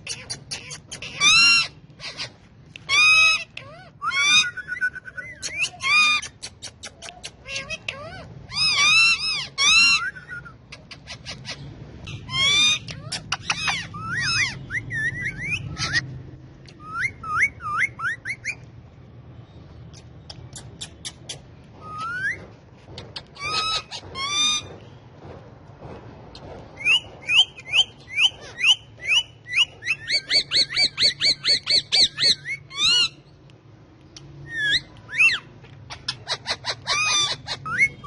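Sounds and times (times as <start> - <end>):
parakeets squawking: 0.0 - 16.1, 20.3 - 24.9, 26.6 - 33.4, 34.2 - 38.0
rising whistles and chatter: 4.3 - 6.4.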